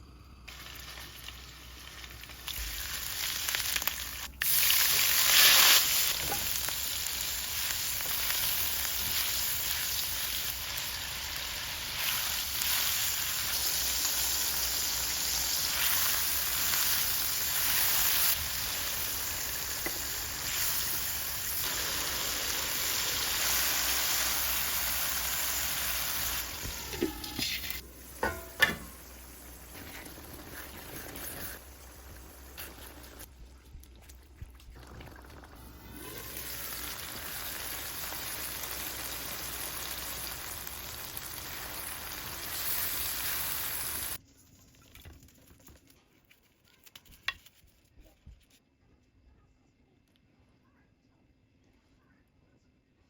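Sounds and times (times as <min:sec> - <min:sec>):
food sizzling in hot oil: 0:00.4 - 0:33.3, 0:35.8 - 0:44.2.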